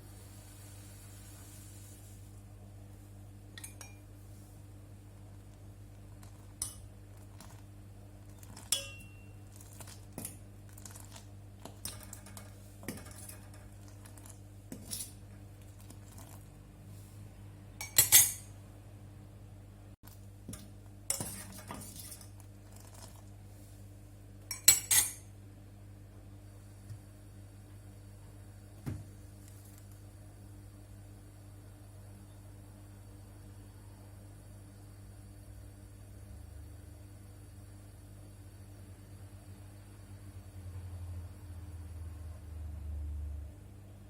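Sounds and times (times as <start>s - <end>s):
low steady hum: 0.0s - 44.0s
utensils and dishes clinking: 8.4s - 9.4s, 17.8s - 18.5s, 24.5s - 25.3s.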